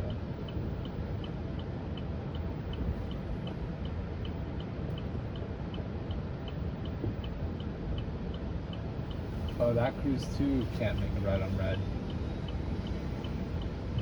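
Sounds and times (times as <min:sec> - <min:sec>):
low cabin rumble: 0:00.0 - 0:01.6, 0:06.6 - 0:14.0
turn signal ticking: 0:00.0 - 0:14.0.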